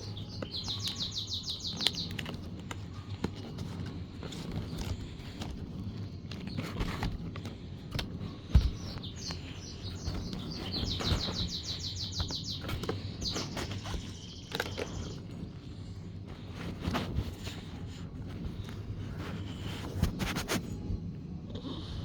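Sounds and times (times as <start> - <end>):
bird chirping trill: 0.0 - 3.2, 8.4 - 15.5
handling knocks and clicks: 0.0 - 20.7.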